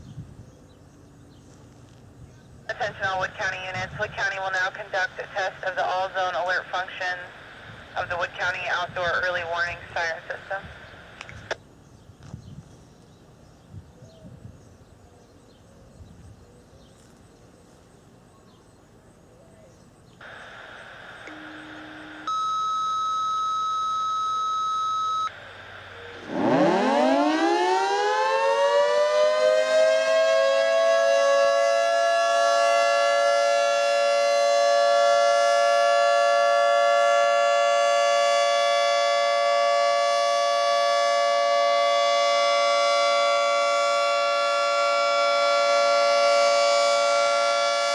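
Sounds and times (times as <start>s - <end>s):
low radio tone: 2.7s - 11.6s, 19.4s - 27.8s
radio scanner hiss: 2.7s - 11.6s, 20.2s - 26.7s
high activation tone: 20.2s - 28.6s.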